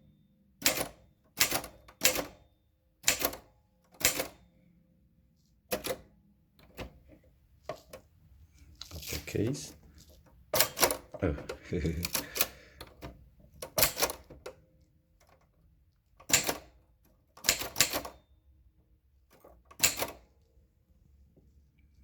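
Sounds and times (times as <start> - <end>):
typewriter key strikes: 0.6 - 2.4, 3.0 - 4.4, 10.6 - 11.1, 12.1 - 14.3, 16.2 - 16.8, 17.4 - 18.2, 19.7 - 20.2.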